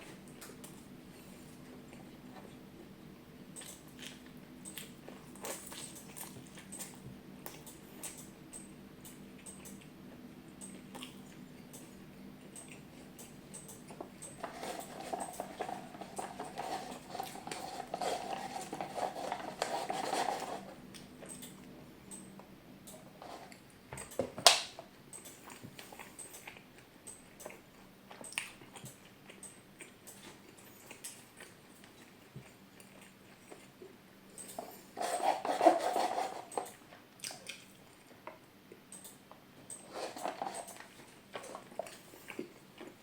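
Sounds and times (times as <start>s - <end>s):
person chewing and mouth sounds: 25.1s - 43.0s.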